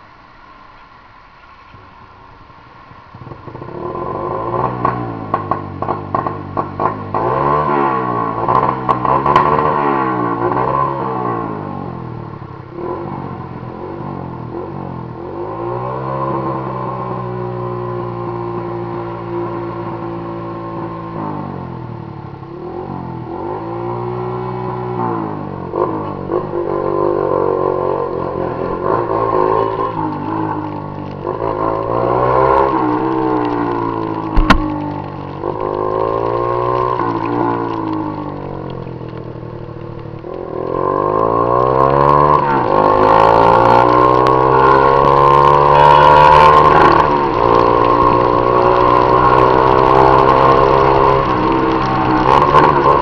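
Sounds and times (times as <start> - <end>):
motorcycle engine revving: 3.2 - 12.0, 22.5 - 53.0
sharp click: 34.4 - 34.9.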